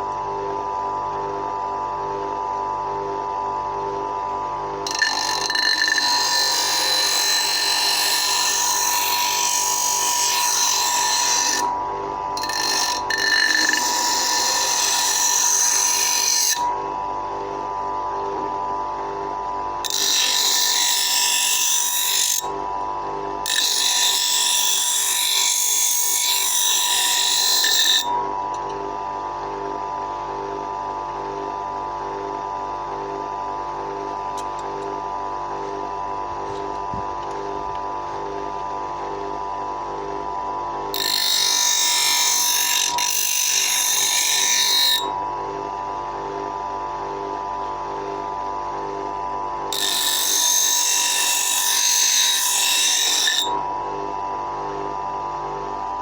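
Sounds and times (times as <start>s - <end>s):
bench grinder motor humming: 1.2s - 56.0s
metal grinding on stone: 4.9s - 11.7s.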